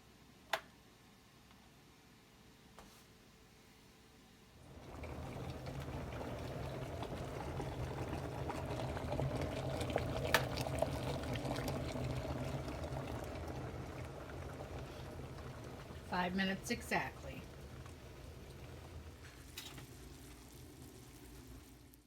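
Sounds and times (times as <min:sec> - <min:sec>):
kettle hiss and rumble: 0:04.4 - 0:22.0.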